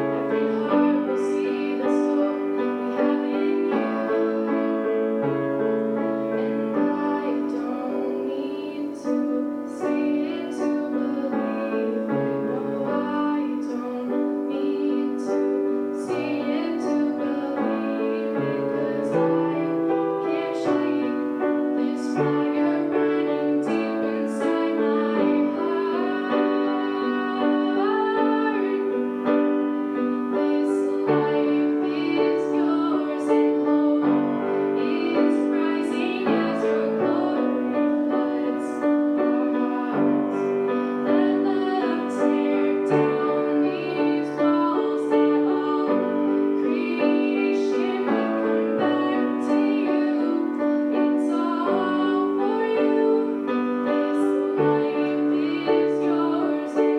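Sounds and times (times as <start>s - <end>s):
woman singing: 0.0s - 5.3s, 5.9s - 56.9s
piano chords: 0.0s - 56.9s.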